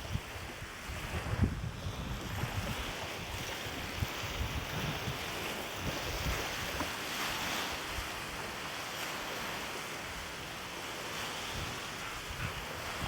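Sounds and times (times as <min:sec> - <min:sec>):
wind buffeting microphone: 0:00.0 - 0:08.5, 0:11.1 - 0:13.0
waves washing on shore: 0:00.0 - 0:13.0.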